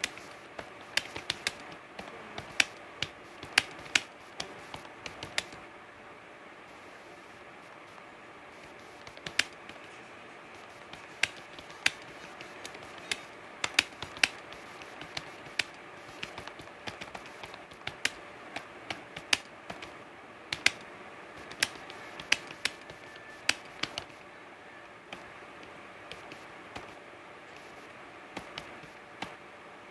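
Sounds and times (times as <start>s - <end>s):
keyboard key clicks: 0.0s - 5.6s, 8.6s - 10.0s, 10.6s - 24.2s, 25.1s - 27.0s, 28.4s - 29.4s
faint hiss: 0.0s - 29.9s.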